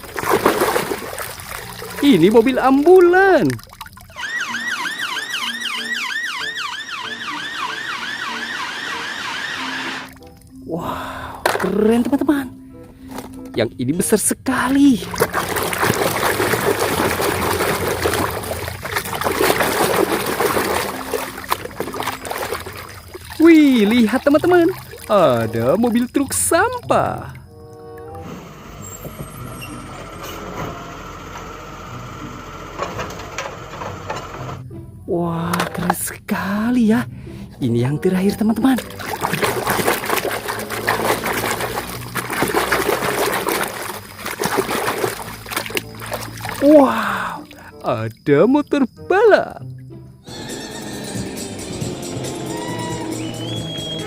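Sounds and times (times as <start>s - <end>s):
water trickling and splashing: 0.0s - 12.4s, 14.5s - 29.9s, 37.6s - 50.0s.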